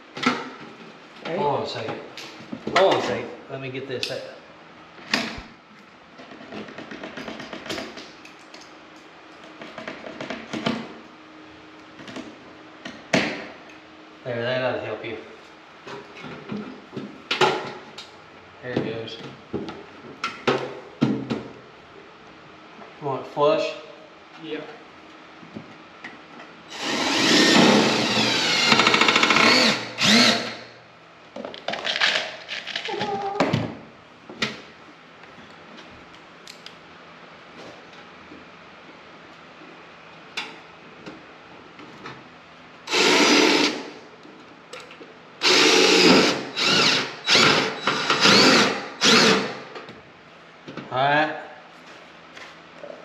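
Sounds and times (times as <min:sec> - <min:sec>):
electric power tool motor: 0:26.7 - 0:30.7, 0:42.9 - 0:43.8, 0:45.4 - 0:49.6.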